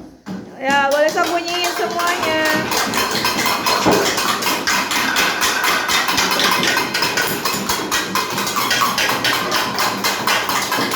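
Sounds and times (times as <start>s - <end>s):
fast banging percussion: 0.5s - 10.9s.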